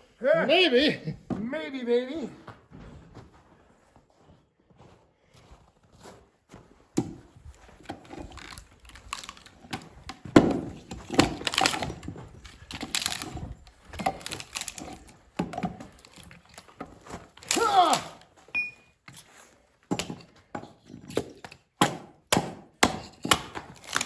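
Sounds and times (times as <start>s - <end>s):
wood knocking and cracking: 7.0s - 18.3s, 19.9s - 24.0s.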